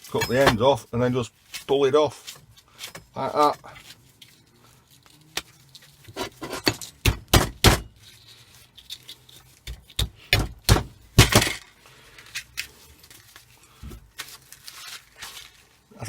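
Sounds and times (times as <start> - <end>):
snips cutting scrap metal: 6.1 - 8.0.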